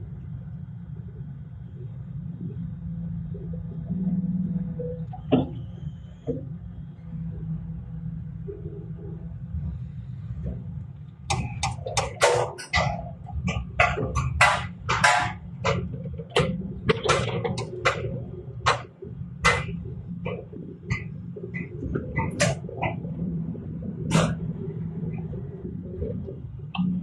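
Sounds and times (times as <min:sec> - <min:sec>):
diesel engine running: 0:00.0 - 0:27.0
sharp metal clanks and scrapes: 0:11.3 - 0:15.8.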